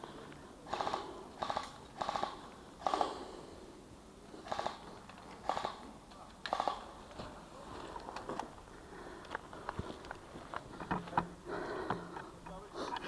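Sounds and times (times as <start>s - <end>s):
airsoft gun firing bursts: 0.7s - 3.1s, 4.4s - 4.8s, 5.4s - 5.8s, 6.5s - 6.9s.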